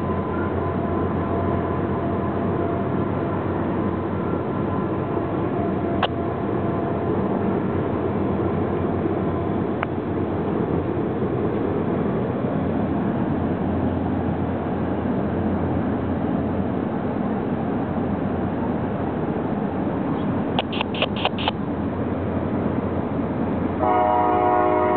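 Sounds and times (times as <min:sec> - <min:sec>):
distant freight train rumbling: 0:00.0 - 0:24.9
sharp click: 0:20.6 - 0:21.6.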